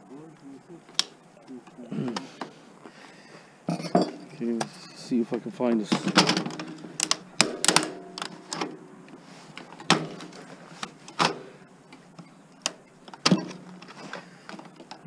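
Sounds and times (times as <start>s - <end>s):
metal tools clinking: 3.6s - 15.0s.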